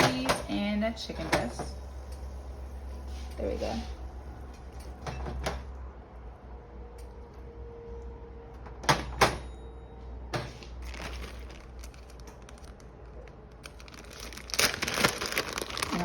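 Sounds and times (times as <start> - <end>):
kitchen items knocking and clicking: 0.0 - 0.6
low steady hum: 0.0 - 16.0.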